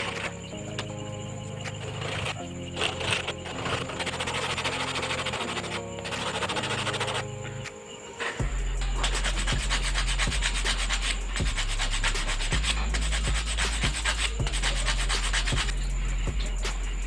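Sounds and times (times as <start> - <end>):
abrasive sanding strokes: 1.7 - 17.0
steady low hum: 8.4 - 17.0.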